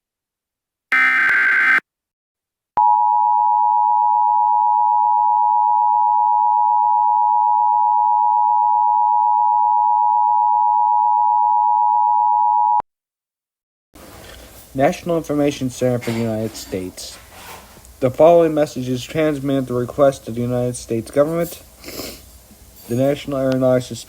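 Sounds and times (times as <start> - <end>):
buzzy warbling data burst: 0.9 - 1.8
two-tone alarm: 0.9 - 1.8.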